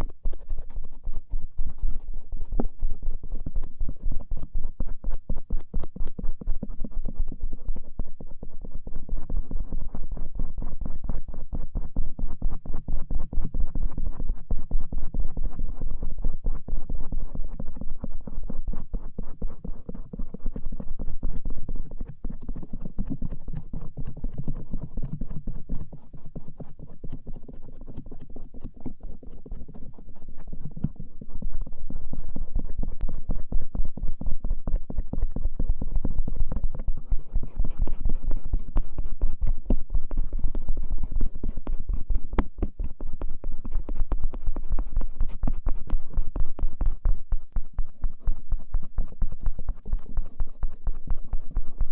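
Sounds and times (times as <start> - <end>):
ear pick scratching ear: 0.0 - 6.3, 18.8 - 33.8, 35.9 - 51.9.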